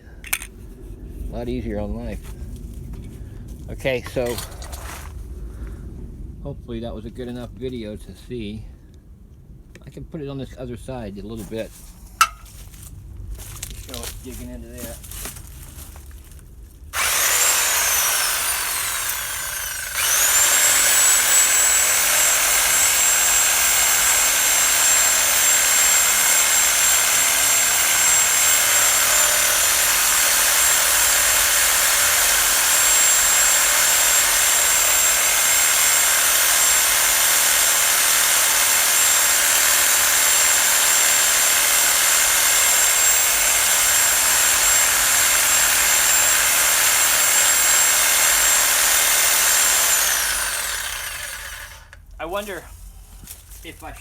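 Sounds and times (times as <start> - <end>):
reciprocating saw cutting wood: 17.0 - 52.0.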